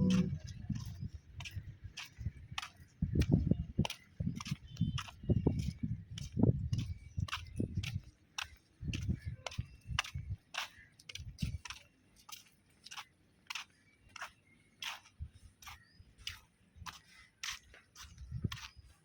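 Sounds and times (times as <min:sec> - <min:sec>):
soft low thumps: 0:00.0 - 0:01.6
footsteps clicking: 0:00.0 - 0:19.0.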